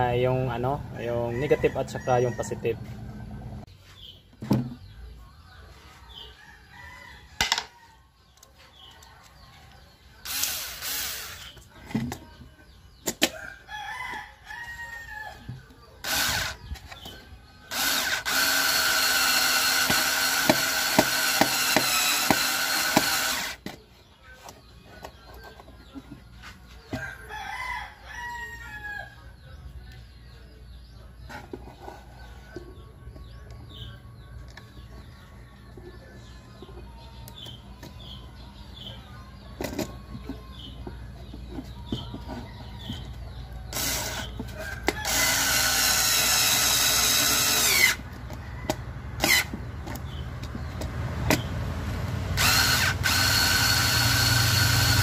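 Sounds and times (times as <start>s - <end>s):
rooster crowing: 1.1s - 3.2s, 26.9s - 29.3s
power drill running: 10.2s - 11.4s, 16.0s - 16.6s, 17.7s - 23.6s, 43.7s - 44.2s, 45.0s - 48.0s, 52.4s - 55.0s
chickens clucking: 23.7s - 27.6s, 29.2s - 45.0s.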